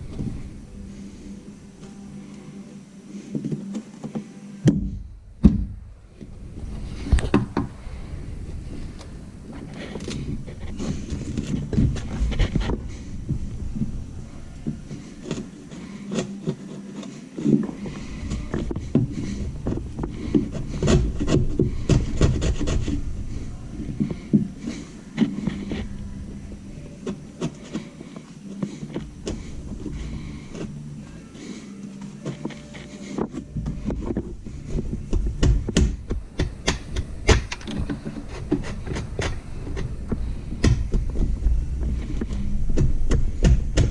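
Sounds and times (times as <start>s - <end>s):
chisel scraping wood: 9.5s - 13.2s, 13.8s - 26.1s, 27.0s - 43.9s.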